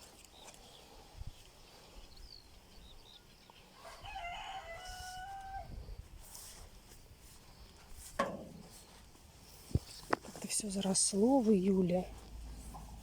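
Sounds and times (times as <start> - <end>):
small birds chirping: 0.0 - 4.2
rooster crowing: 3.8 - 5.8.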